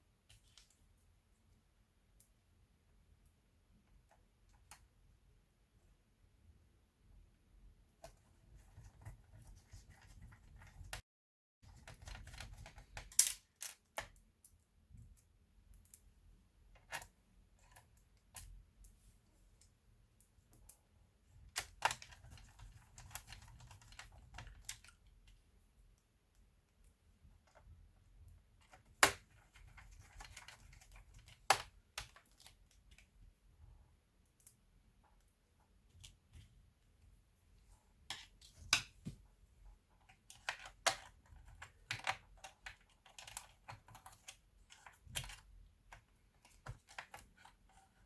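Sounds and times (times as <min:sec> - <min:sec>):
plastic laptop parts clicking: 0:28.6 - 0:32.7, 0:40.2 - 0:47.7.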